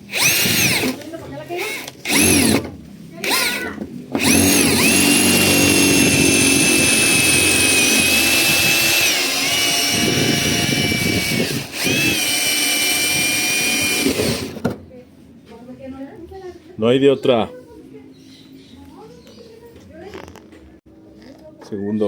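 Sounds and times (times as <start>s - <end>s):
electric drill whining: 0.0s - 14.6s.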